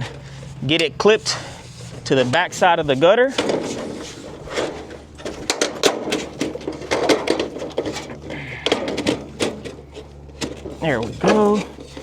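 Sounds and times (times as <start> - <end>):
metal gutter guard snapping on: 3.3 - 12.0.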